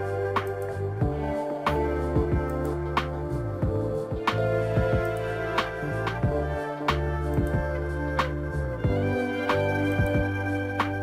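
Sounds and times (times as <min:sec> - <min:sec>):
soft instrumental music: 0:00.0 - 0:11.0.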